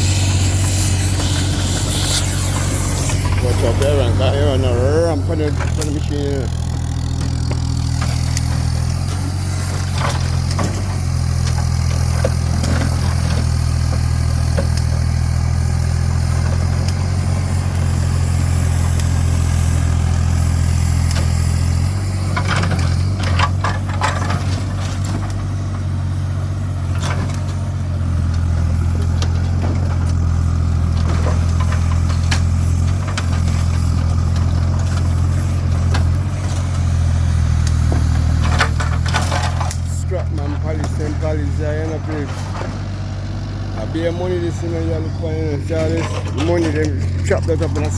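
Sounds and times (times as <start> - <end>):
heavy machine engine running: 0.0 - 47.9
scrap metal clanking: 37.8 - 43.2, 44.4 - 47.9.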